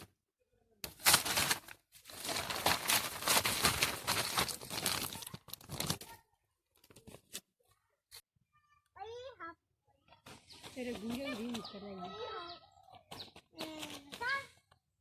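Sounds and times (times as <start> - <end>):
plastic bag crinkling: 0.9 - 6.2.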